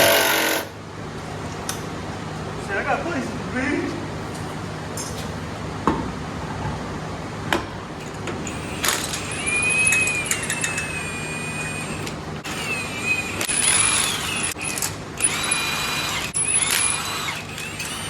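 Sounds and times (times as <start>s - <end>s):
power tool whining: 8.4s - 18.0s.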